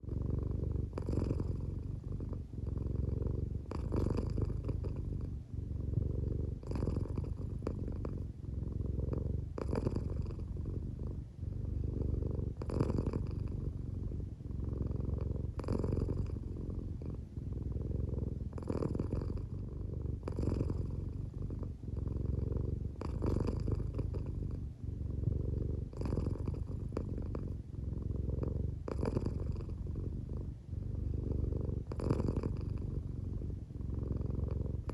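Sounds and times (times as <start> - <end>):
cat purring: 0.0 - 34.9.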